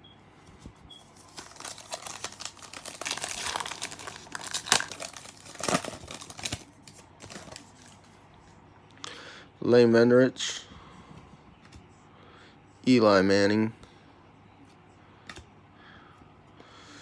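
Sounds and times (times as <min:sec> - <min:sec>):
foil wrapper crinkling: 0:01.1 - 0:08.1
wrapper ripping: 0:01.2 - 0:08.0.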